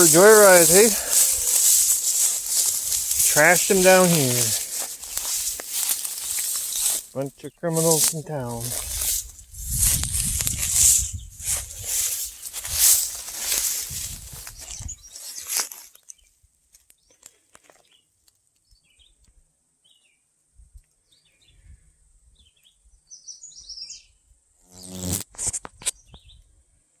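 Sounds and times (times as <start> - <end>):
high insect drone: 0.0 - 7.2
rustling: 0.0 - 16.0
small birds chirping: 0.0 - 17.2.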